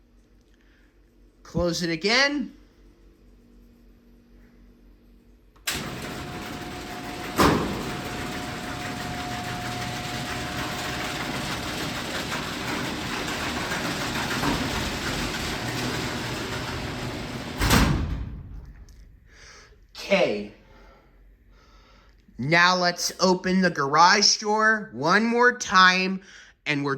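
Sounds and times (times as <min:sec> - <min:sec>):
garage door opener running: 0:05.6 - 0:19.1
loud bang of door: 0:05.8 - 0:18.7.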